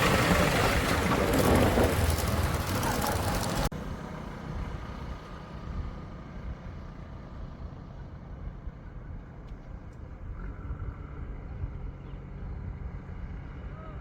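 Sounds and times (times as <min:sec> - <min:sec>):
diesel engine running: 0:00.0 - 0:08.2.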